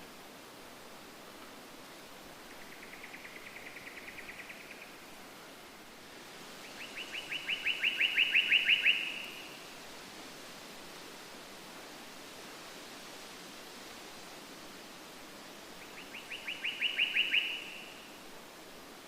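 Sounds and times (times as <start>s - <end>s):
steady background hiss: 0.0s - 19.0s
bird singing trills: 16.2s - 17.9s.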